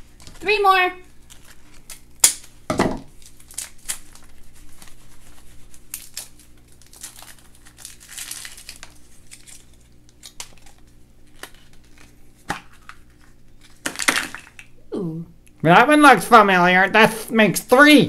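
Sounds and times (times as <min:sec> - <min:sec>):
packaging crinkling and tearing: 0:01.1 - 0:14.7.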